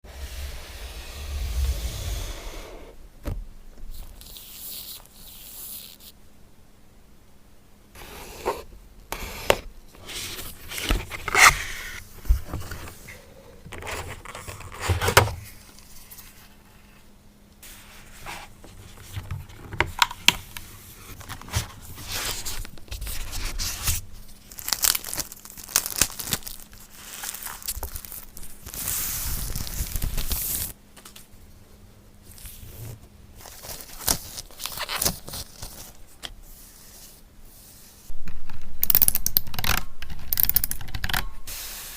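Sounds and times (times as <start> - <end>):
cardboard and plastic crinkling: 21.1 - 30.7, 33.4 - 36.2.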